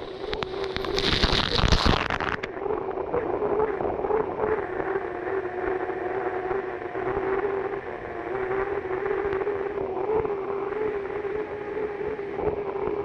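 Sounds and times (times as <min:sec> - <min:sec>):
gas turbine engine whine: 0:00.0 - 0:01.1.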